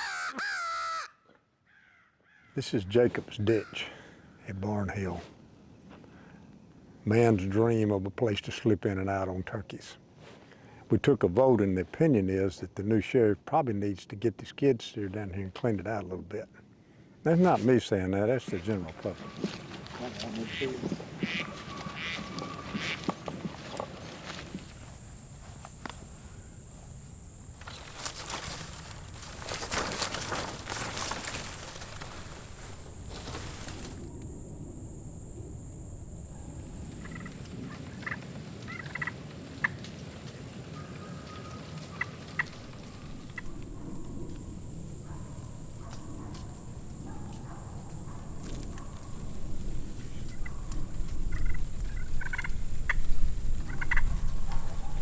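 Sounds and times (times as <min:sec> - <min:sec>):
turkeys gobbling: 0:00.0 - 0:01.1, 0:03.5 - 0:04.0, 0:24.5 - 0:38.2, 0:42.4 - 0:55.0
rushing wind: 0:42.5 - 0:55.0.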